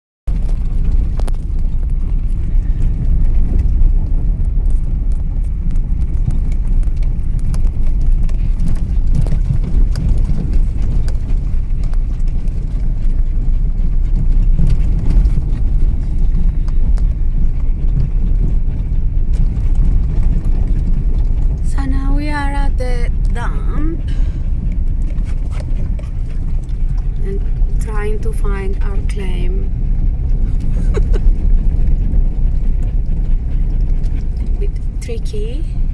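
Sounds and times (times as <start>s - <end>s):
vehicle low rumble: 0.3s - 35.9s.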